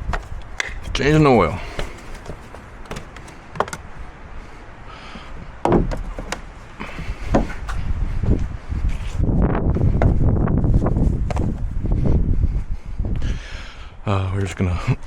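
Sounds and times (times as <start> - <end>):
loud thump: 5.6 - 6.4.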